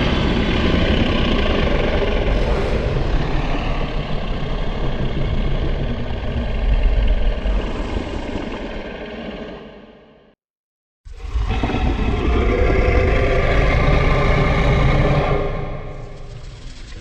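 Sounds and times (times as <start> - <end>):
deep rumbling dinosaur growl: 0.0 - 10.2, 11.1 - 17.0.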